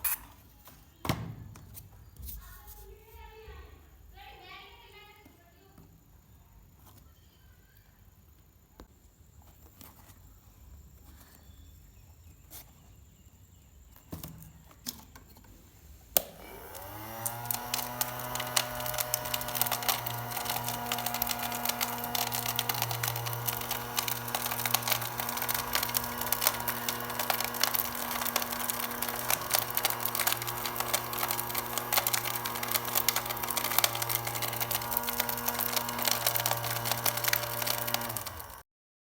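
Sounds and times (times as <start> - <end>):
small electric motor humming: 16.2 - 38.6.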